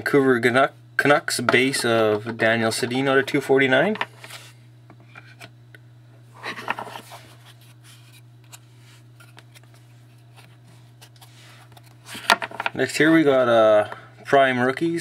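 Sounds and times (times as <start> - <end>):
low electrical hum: 0.0 - 15.0
card scrape: 4.1 - 4.6, 6.4 - 12.4.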